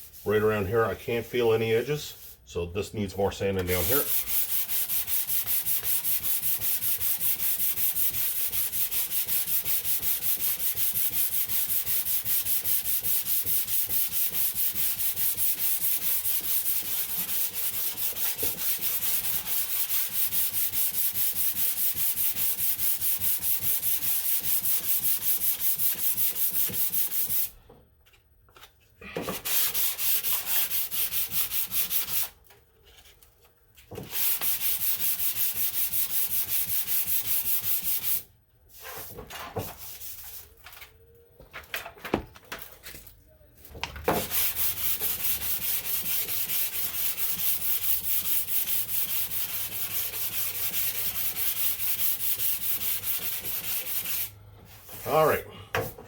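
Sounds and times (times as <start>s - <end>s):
sandpaper rasping strokes: 0.0s - 2.4s, 3.6s - 27.5s, 29.4s - 32.3s, 34.0s - 38.2s, 44.2s - 55.3s.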